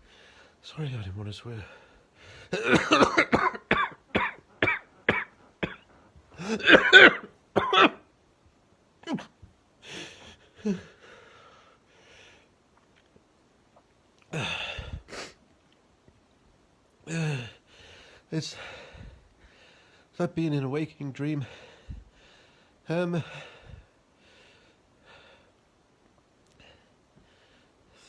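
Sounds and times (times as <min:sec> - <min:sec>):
man coughing: 0:02.6 - 0:08.0, 0:09.0 - 0:09.3.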